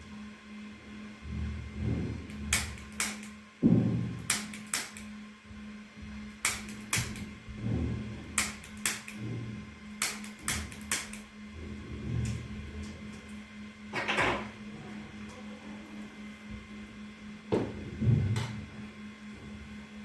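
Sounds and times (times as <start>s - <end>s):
steady low hum: 0.0s - 20.0s
dull low thuds: 3.6s - 4.3s
sharp clicks and slaps: 4.3s - 5.1s, 6.4s - 7.3s, 10.0s - 11.2s.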